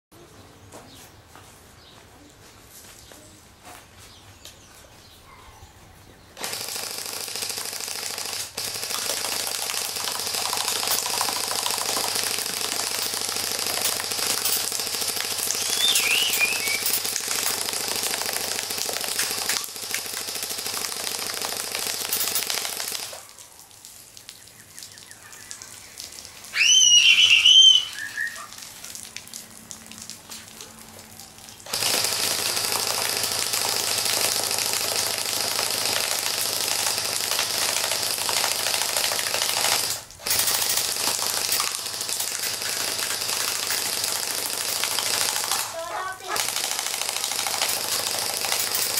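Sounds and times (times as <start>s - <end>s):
airsoft gun firing full auto: 6.4s - 23.2s, 31.7s - 48.9s
short chirp: 15.6s - 17.0s.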